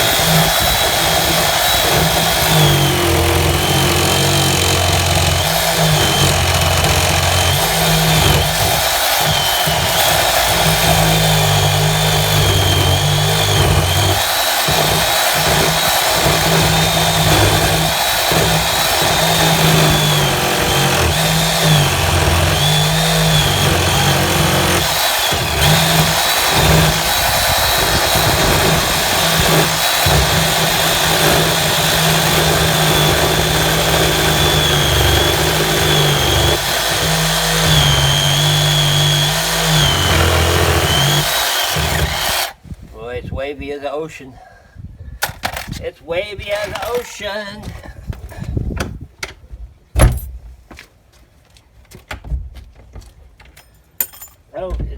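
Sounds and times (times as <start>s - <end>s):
power tool cutting wood: 0.0s - 42.6s.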